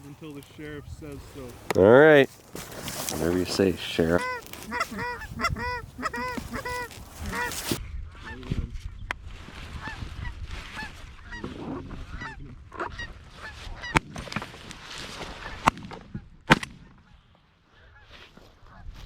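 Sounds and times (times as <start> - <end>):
goose honking: 3.2 - 7.8.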